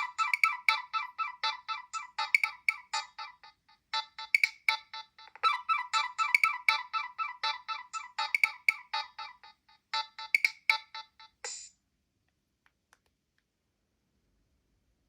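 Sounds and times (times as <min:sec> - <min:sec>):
polyphonic ringtone melody: 0:00.0 - 0:11.7.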